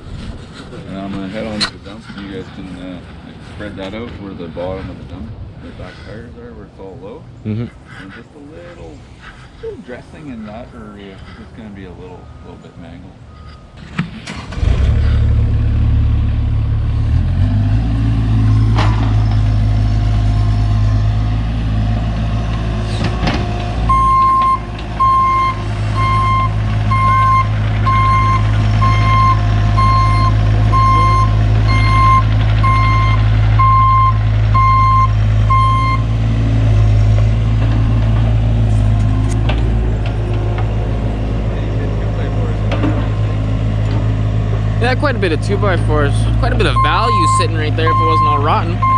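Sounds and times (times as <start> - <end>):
truck engine running: 10.2 - 48.9
backup alarm beeping: 23.8 - 36.1, 46.6 - 48.9.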